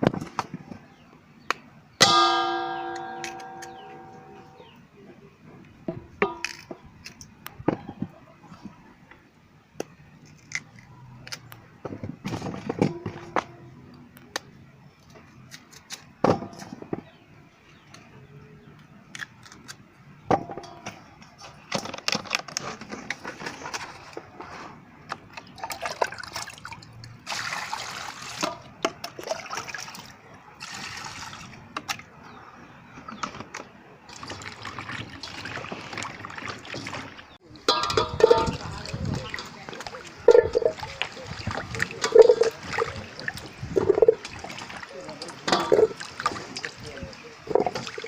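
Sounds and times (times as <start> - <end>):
water splashing and trickling: 2.0 - 4.7, 23.6 - 32.3, 34.1 - 48.0.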